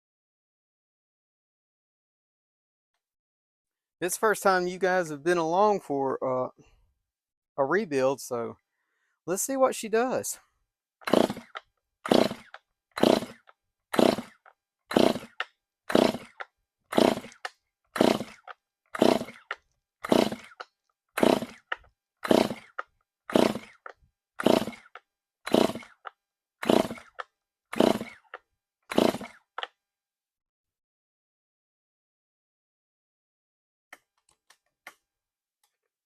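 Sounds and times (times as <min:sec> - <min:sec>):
chainsaw pull-start cranking: 0:11.0 - 0:29.8.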